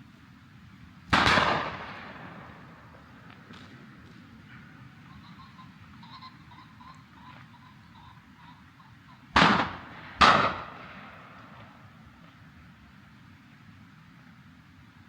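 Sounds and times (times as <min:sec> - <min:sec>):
shotgun shots with echo: 0:01.1 - 0:03.2, 0:09.4 - 0:11.8.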